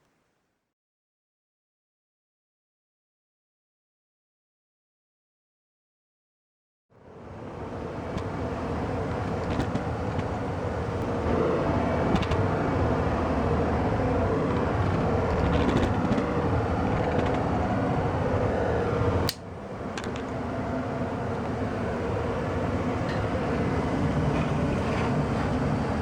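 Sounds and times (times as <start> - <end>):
gas furnace rumbling: 7.0 - 26.0.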